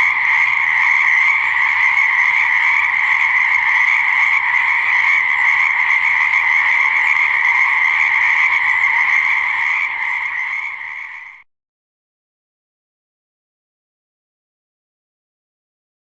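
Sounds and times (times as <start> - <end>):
frogs croaking in chorus: 0.0 - 11.4.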